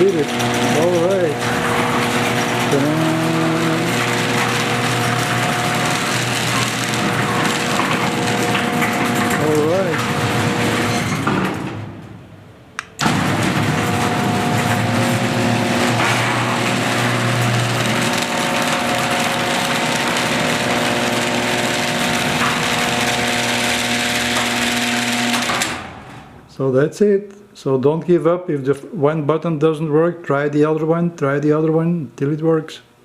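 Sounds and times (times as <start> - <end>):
garage door opener motor humming: 0.0 - 26.5.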